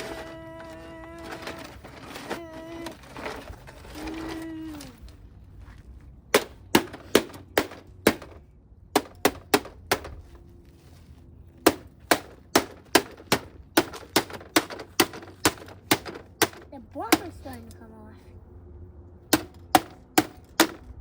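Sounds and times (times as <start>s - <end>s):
hammer striking plastic: 6.3s - 10.2s, 11.6s - 17.4s, 19.3s - 20.9s.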